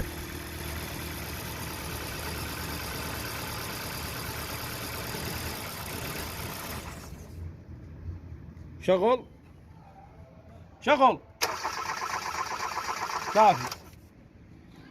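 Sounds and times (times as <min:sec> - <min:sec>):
car engine idling: 0:00.0 - 0:07.4.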